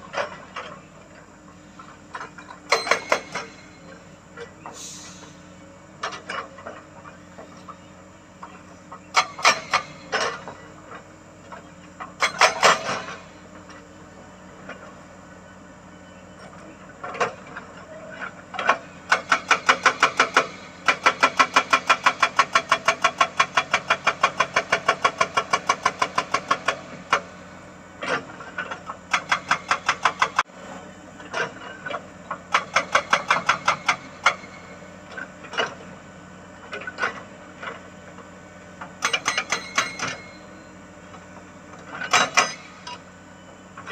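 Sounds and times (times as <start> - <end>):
excavator engine hum: 0.0 - 43.9
hydraulic breaker hammering rock: 1.8 - 4.5, 8.4 - 13.4, 18.2 - 30.4, 31.2 - 35.9, 38.8 - 40.6, 41.7 - 43.0.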